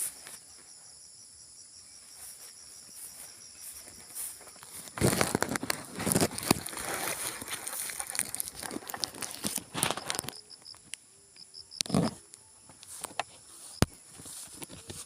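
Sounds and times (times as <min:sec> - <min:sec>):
insects chirping: 0:00.0 - 0:15.0
rice plants rustling: 0:02.1 - 0:10.4, 0:12.9 - 0:15.0.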